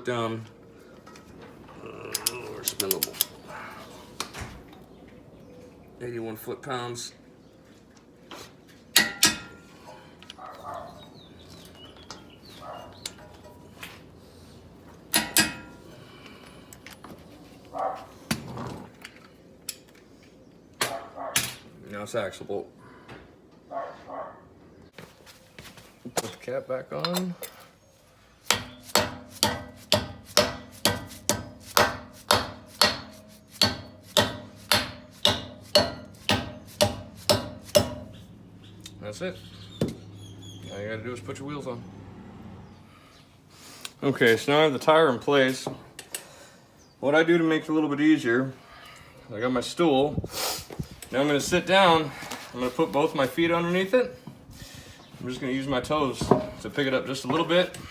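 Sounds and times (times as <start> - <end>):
hammer tapping metal: 9.0 - 9.6, 15.1 - 15.8, 28.5 - 38.2.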